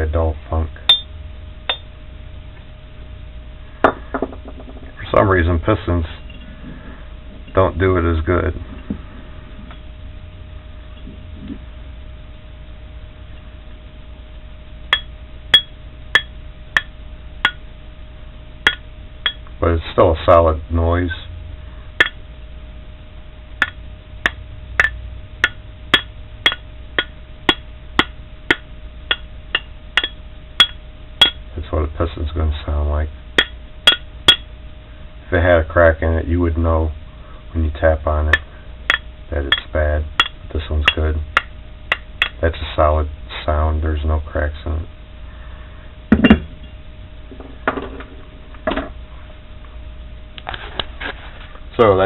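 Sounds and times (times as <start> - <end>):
steel tool tapping metal piston: 0.9 - 1.1, 14.9 - 17.6, 18.7 - 19.4, 22.0 - 22.2, 23.6 - 31.4, 33.4 - 34.5, 38.3 - 42.4.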